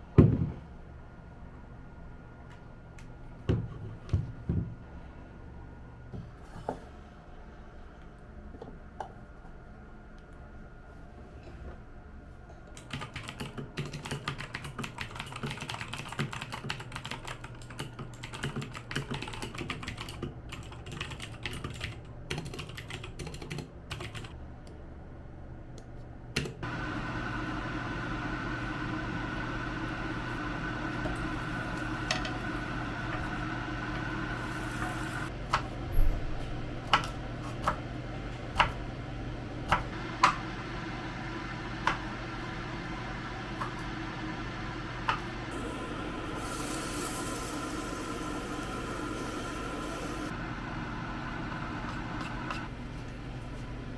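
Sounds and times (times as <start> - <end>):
appliance hum with held tone: 0.0 - 53.9
typing on computer keyboard: 12.8 - 24.4.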